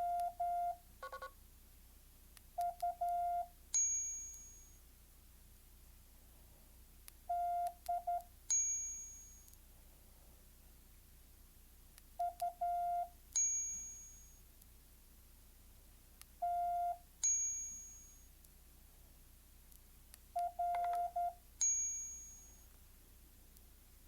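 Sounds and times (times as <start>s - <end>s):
bell-like ding: 3.8s - 4.8s, 8.5s - 9.4s, 13.4s - 14.4s, 17.2s - 18.2s, 21.6s - 22.6s
morse code beeps: 20.4s - 21.3s.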